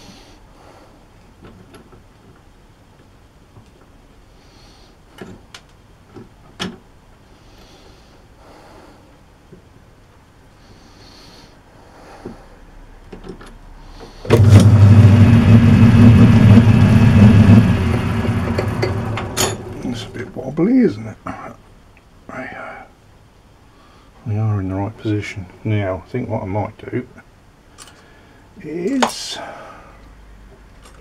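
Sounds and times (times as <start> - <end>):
light clicks and knocks: 13.1 - 14.1
lathe motor humming: 14.3 - 20.2.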